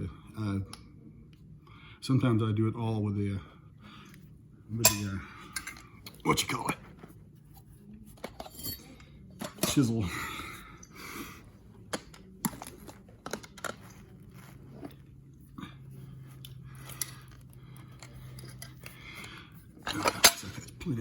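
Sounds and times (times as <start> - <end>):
carpet scraping and rustling: 11.7 - 19.0.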